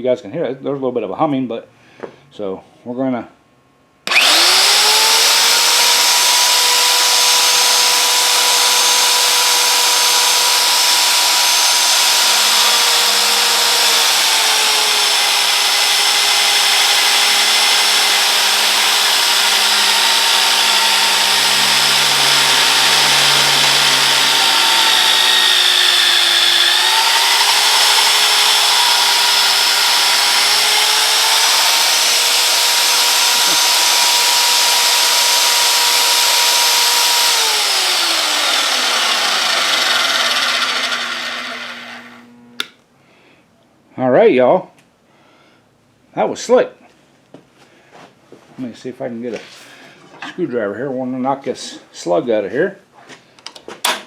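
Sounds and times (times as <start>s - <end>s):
drill motor whining: 4.1s - 42.7s.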